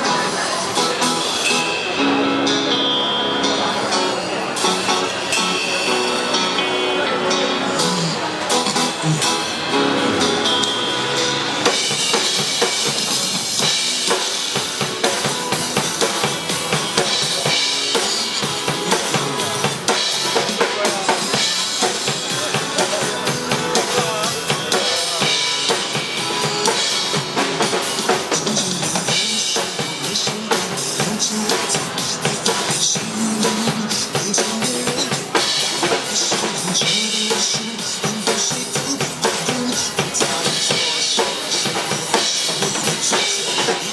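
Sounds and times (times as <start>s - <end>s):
live band music: 0.0s - 43.9s.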